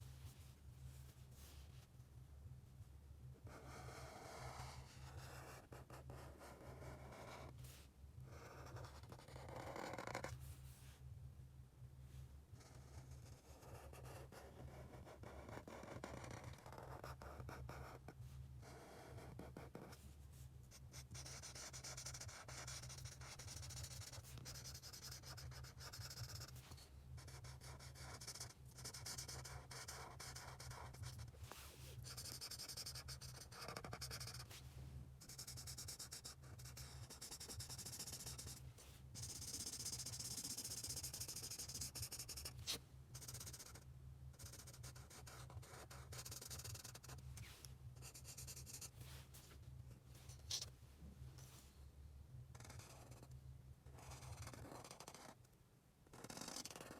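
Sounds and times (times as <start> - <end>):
drawing tool scratching paper: 35.3 - 38.6.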